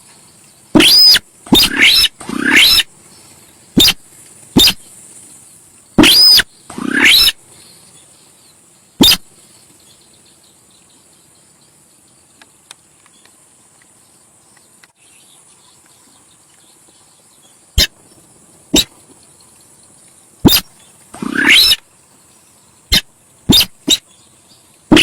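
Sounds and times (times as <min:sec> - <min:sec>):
bird chirps: 0:00.0 - 0:04.9, 0:06.0 - 0:12.2, 0:14.5 - 0:25.0
steady hiss: 0:00.0 - 0:25.0
sharp bird calls: 0:00.7 - 0:05.0, 0:06.0 - 0:08.2, 0:09.0 - 0:10.9, 0:17.8 - 0:25.0.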